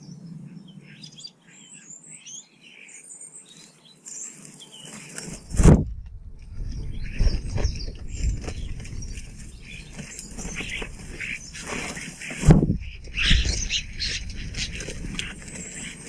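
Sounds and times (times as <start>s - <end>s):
loud thumps: 5.5s - 8.9s, 12.4s - 13.7s
faint bird chirps: 6.4s - 16.0s.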